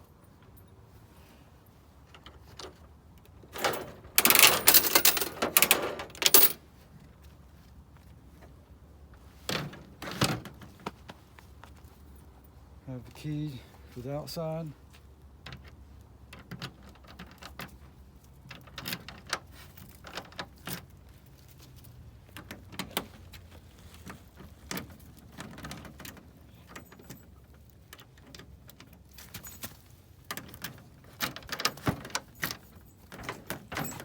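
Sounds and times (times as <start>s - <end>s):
metal clicks and knocks: 3.5s - 6.6s
keys jangling: 3.6s - 6.6s, 31.3s - 34.0s.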